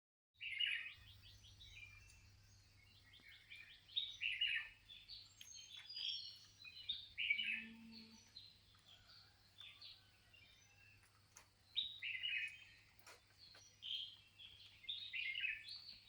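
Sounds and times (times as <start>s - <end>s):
small birds chirping: 0.4s - 16.0s.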